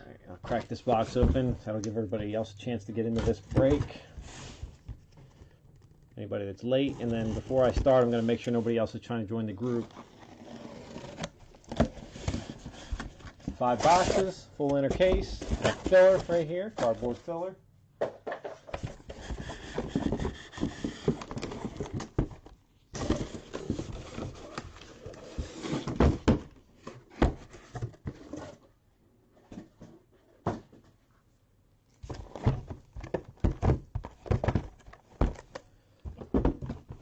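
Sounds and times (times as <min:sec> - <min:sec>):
cardboard scraping and rustling: 0:03.0 - 0:06.0, 0:06.7 - 0:08.6, 0:09.6 - 0:17.4, 0:18.7 - 0:28.7, 0:32.0 - 0:35.6.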